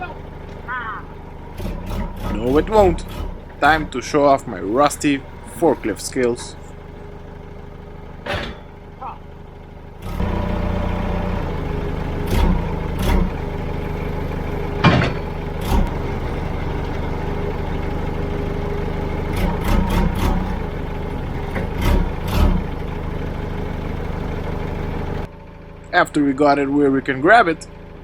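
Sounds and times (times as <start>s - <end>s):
forklift engine running: 0.0s - 28.0s
short knocks and clanks: 8.1s - 9.0s, 14.8s - 17.0s.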